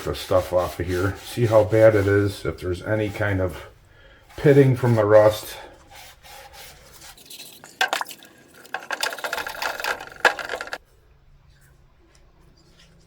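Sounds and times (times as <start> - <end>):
scouring pad scrubbing metal: 0.0 - 10.8.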